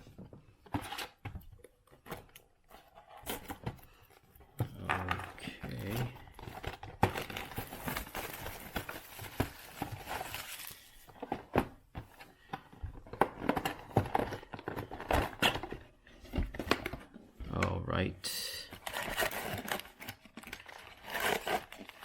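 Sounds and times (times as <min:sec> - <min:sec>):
plastic wrap crinkling and tearing: 0:05.4 - 0:11.1, 0:18.8 - 0:22.0.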